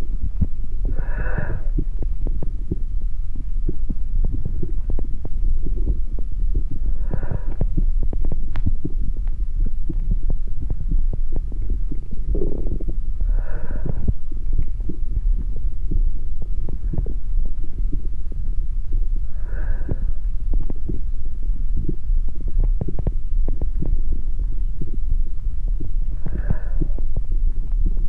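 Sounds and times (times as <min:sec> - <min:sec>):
heartbeat thumps: 0:00.0 - 0:28.0
steady low hum: 0:00.0 - 0:28.0.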